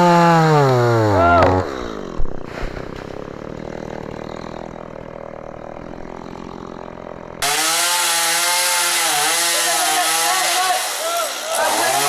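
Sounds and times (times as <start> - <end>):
chainsaw idling: 0.0 - 2.2, 3.0 - 12.0
person speaking loudly: 9.2 - 12.0.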